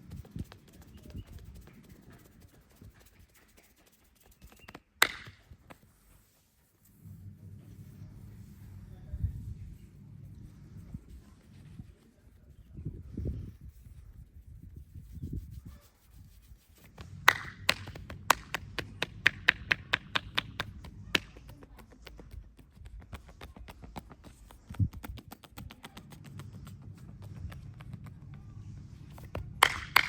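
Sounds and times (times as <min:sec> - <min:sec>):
hands rubbing on skin: 0:00.0 - 0:04.9, 0:13.3 - 0:28.3
hands slapping and tapping body: 0:03.6 - 0:05.9, 0:16.8 - 0:28.4, 0:29.1 - 0:30.0.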